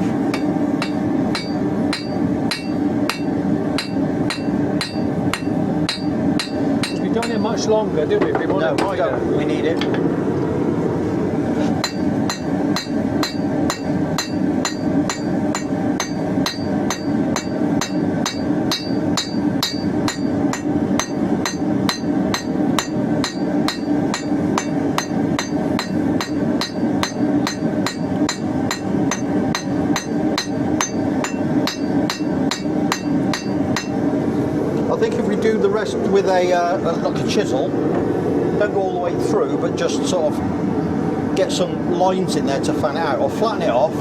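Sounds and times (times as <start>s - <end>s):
gas forge roaring: 0.0s - 44.0s
hammer striking steel on anvil: 0.3s - 7.5s, 11.8s - 34.1s.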